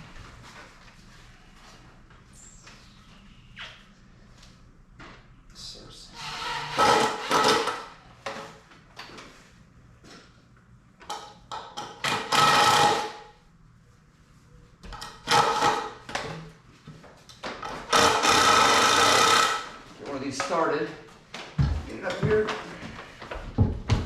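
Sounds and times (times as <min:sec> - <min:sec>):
power drill driving screws: 0:06.2 - 0:07.8, 0:12.0 - 0:13.2, 0:17.9 - 0:19.8.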